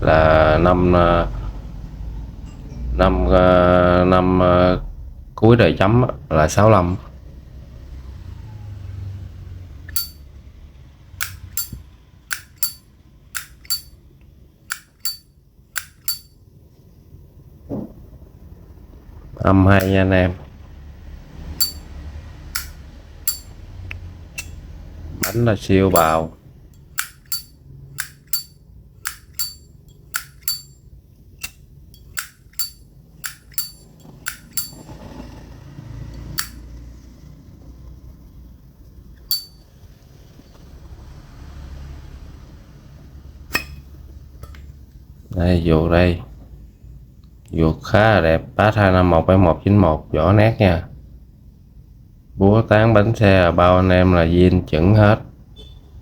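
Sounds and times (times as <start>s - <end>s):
metal lighter lid clinking: 9.9s - 10.2s, 11.2s - 12.8s, 13.4s - 14.0s, 14.7s - 16.3s, 21.6s - 21.9s, 22.6s - 23.5s, 24.4s - 24.6s, 25.2s - 26.2s, 26.8s - 30.8s, 31.4s - 34.9s, 36.4s - 36.6s, 39.3s - 39.6s.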